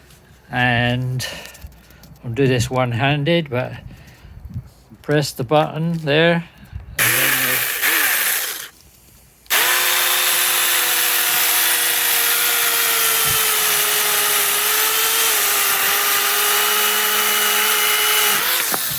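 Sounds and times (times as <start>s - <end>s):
battery chainsaw cutting branch: 7.0s - 8.8s, 9.5s - 18.9s.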